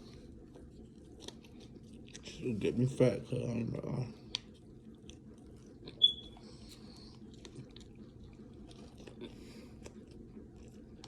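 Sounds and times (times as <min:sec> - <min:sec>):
person chewing: 0:00.0 - 0:02.6, 0:04.2 - 0:11.0
sharp high-pitched squeak: 0:06.0 - 0:06.4.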